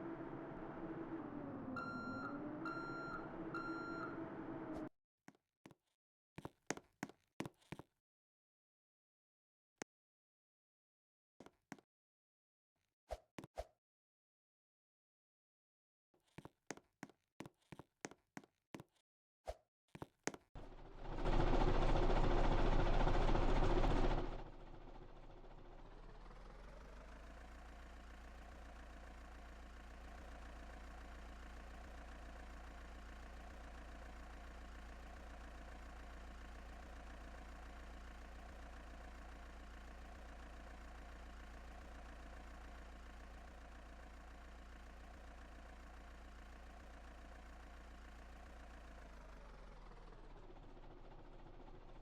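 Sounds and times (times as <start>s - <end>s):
heavy machine engine revving: 0.0s - 4.9s, 20.6s - 24.6s.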